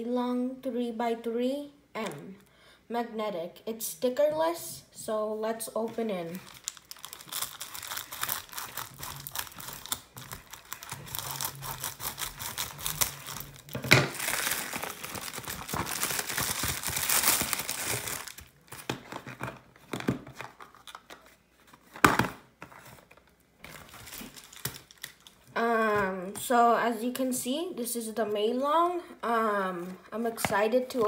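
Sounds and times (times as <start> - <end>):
packaging crinkling and tearing: 6.4 - 25.5.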